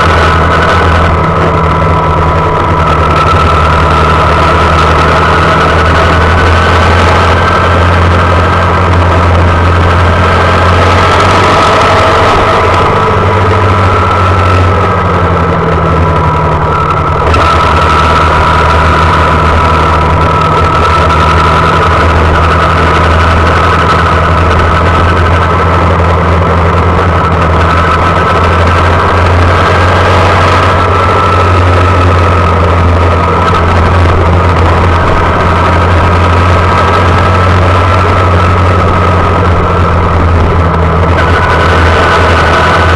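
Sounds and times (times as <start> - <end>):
small motorcycle engine running: 0.0 - 42.9.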